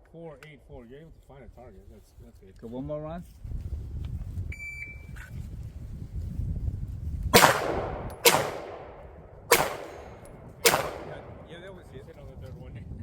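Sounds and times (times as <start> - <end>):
pistol shots with echo: 7.4 - 11.8.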